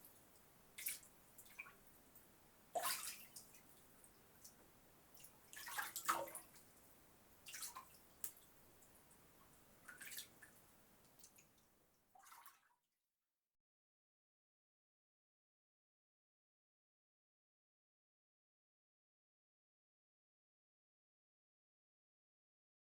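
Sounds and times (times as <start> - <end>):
water dripping: 0.0 - 12.6
bath water splashing: 2.8 - 3.6, 5.2 - 6.6.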